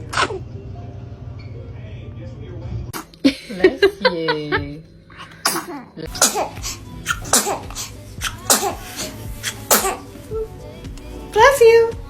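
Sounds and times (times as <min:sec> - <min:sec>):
baby sneezing: 0:05.4 - 0:10.1.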